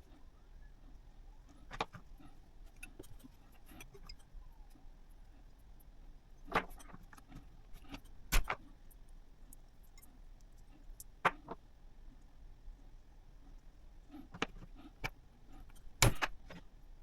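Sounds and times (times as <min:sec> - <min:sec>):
clicks of small hard parts: 0:14.3 - 0:16.7.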